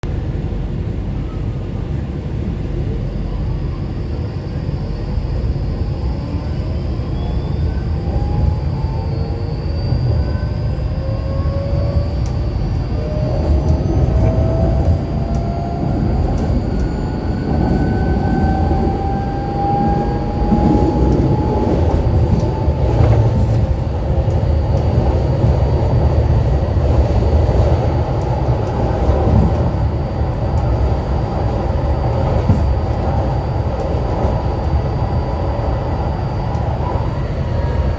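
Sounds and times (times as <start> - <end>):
tram motor whine: 0.0 - 37.9
running gear rumbling on rails: 7.8 - 37.9.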